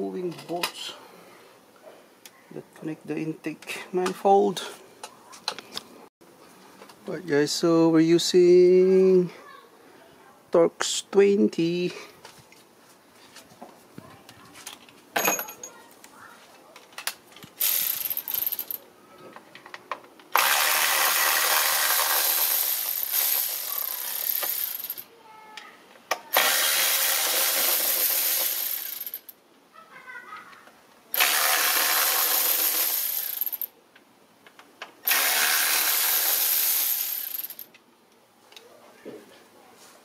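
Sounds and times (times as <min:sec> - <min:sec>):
ratchet loosening bolts: 0:17.6 - 0:18.8, 0:20.3 - 0:25.0, 0:26.3 - 0:29.3, 0:31.1 - 0:33.7, 0:35.0 - 0:37.7.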